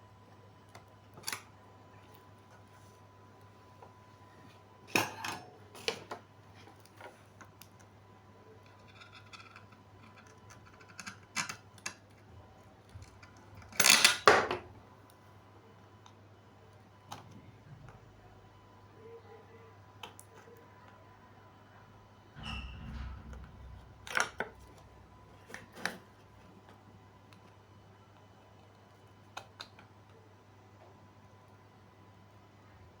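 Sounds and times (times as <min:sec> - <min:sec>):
small parts clicking and clattering: 0:08.6 - 0:12.2.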